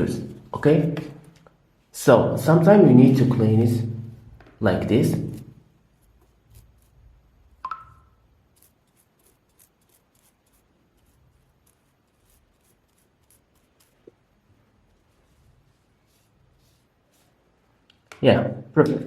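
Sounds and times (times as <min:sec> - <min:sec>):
toothbrush scrubbing speaker grille: 0:05.1 - 0:07.5, 0:08.2 - 0:17.8.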